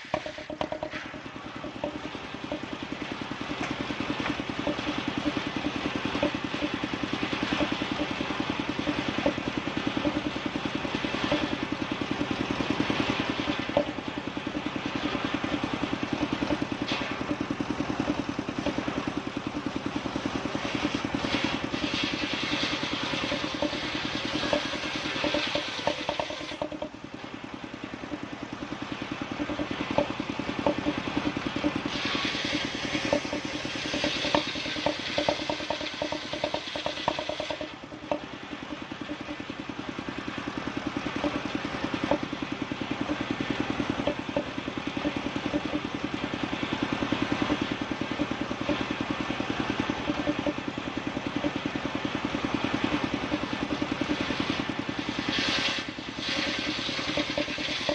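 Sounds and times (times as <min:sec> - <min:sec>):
sawmill motor running: 0:00.0 - 0:57.9
saw blade cutting timber: 0:20.5 - 0:26.8, 0:31.6 - 0:37.8, 0:53.4 - 0:57.9.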